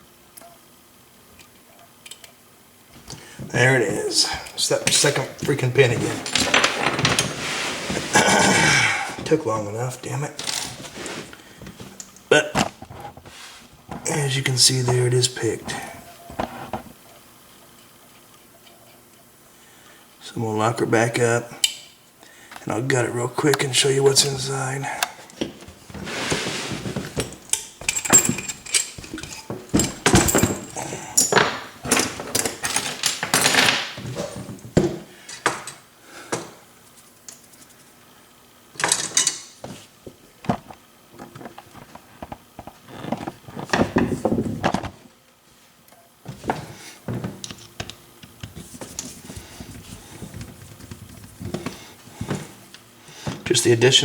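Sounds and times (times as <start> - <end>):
small tools clattering: 4.3 - 8.3, 25.3 - 35.8, 38.8 - 39.6.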